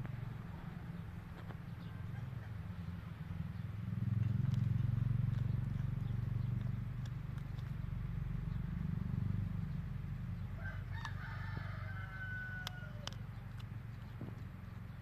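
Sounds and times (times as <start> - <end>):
steady low rumble: 0.0 - 15.0
rooster crowing: 10.6 - 13.2.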